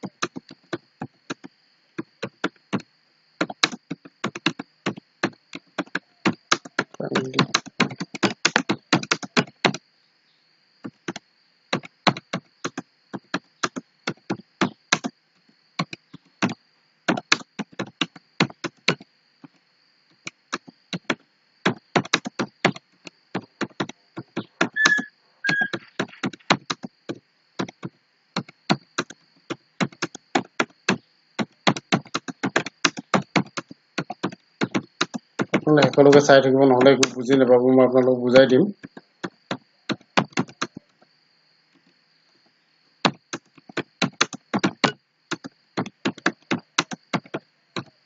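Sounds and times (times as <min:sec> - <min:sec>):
keyboard typing: 0:00.0 - 0:02.8, 0:03.4 - 0:09.8, 0:10.8 - 0:15.1, 0:15.8 - 0:19.0, 0:20.2 - 0:22.8, 0:23.4 - 0:29.2, 0:29.8 - 0:37.3, 0:38.8 - 0:40.8, 0:43.1 - 0:47.9
short high-pitched tones: 0:24.8 - 0:25.9.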